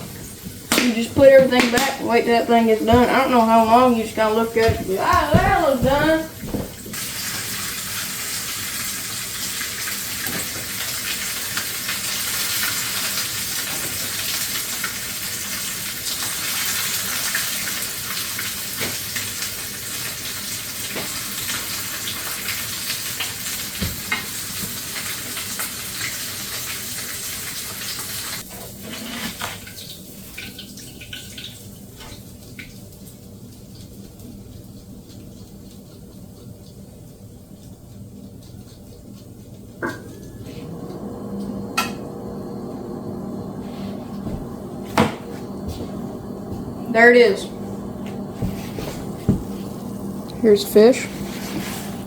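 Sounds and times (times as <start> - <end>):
fish sizzling in hot oil: 6.9 - 28.5.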